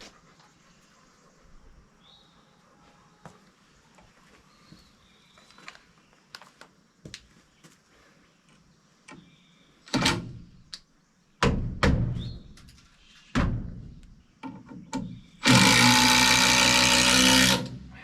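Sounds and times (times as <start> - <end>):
heavy knocks on timber: 11.4 - 12.4
power drill running: 15.4 - 17.8.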